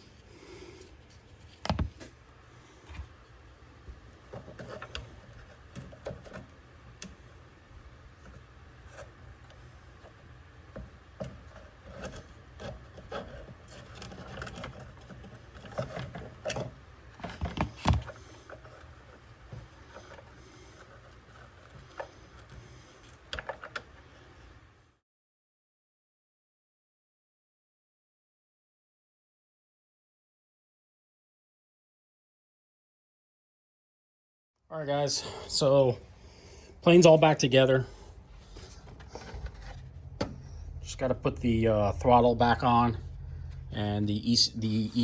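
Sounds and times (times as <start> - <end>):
hands clicking and tapping model parts: 8.2 - 24.1.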